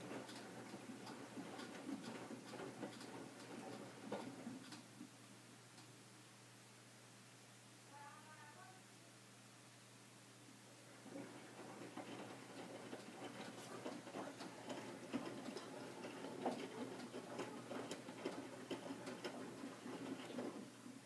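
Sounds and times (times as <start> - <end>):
laundry tumbling with clicks: 0.0 - 4.8, 11.0 - 21.0.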